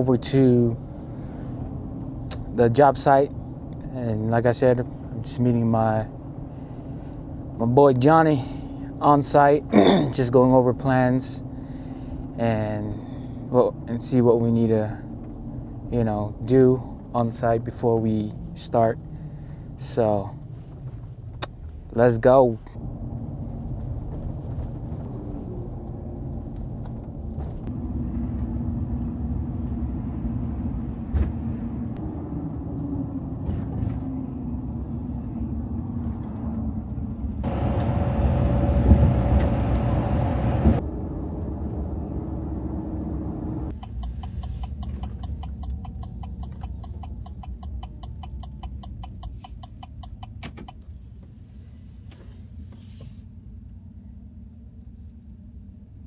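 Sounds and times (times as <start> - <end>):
car engine and road rumble: 0.0 - 56.0
rushing air: 37.4 - 45.4
fast regular ticking: 43.7 - 50.8.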